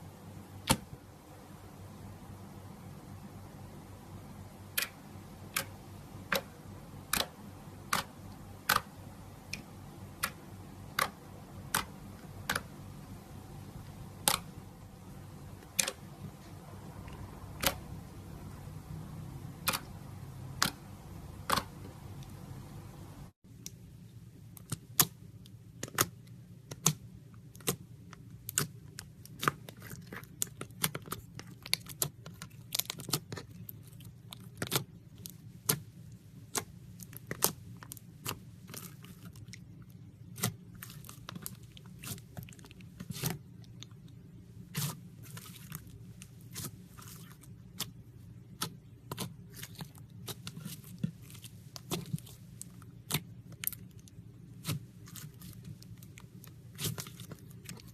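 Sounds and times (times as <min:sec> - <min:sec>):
faint low hum: 0:00.0 - 0:57.9
slime crackling and popping: 0:25.8 - 0:57.9.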